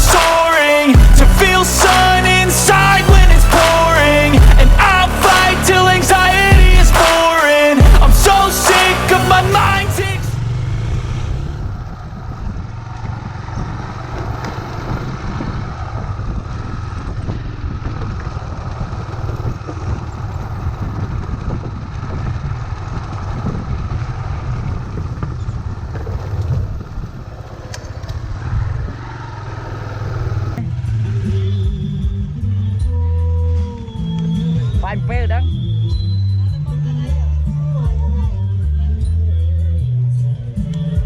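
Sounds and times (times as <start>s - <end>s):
dirt bike engine running: 0.0s - 32.2s.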